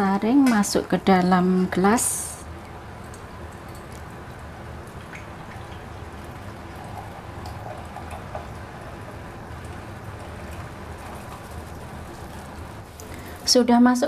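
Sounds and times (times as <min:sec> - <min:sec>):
liquid trickling through strainer: 0:02.8 - 0:13.5.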